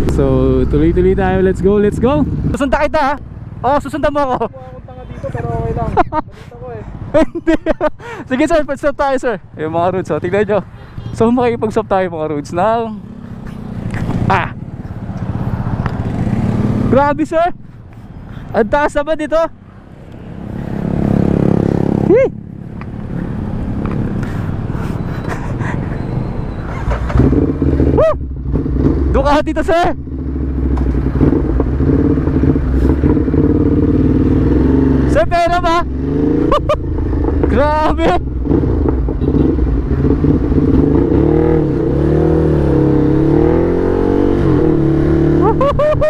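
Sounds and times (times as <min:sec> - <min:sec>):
motorcycle engine running: 0:26.9 - 0:46.0.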